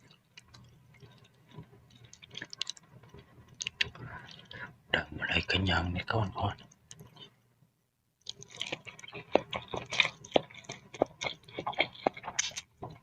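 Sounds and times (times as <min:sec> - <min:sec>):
chewing and wet mouth sounds: 0:00.0 - 0:04.7, 0:06.6 - 0:07.4, 0:08.2 - 0:13.0.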